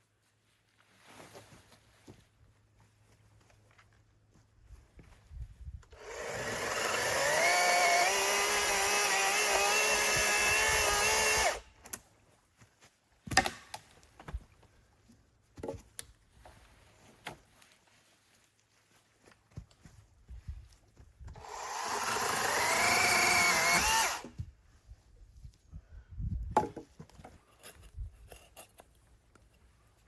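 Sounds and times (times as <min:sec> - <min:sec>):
motor-driven tool spinning: 0:06.0 - 0:11.6, 0:21.4 - 0:24.4.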